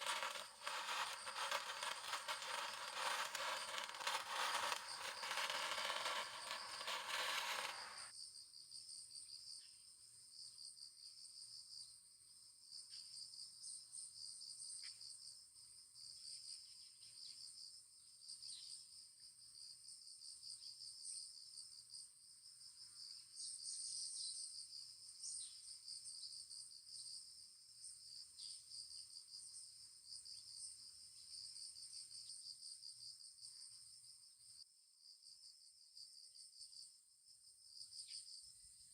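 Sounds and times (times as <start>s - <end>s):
crickets trilling: 0.0s - 8.1s
faint scattered ticks: 0.0s - 8.1s
loud hiss: 0.0s - 8.1s.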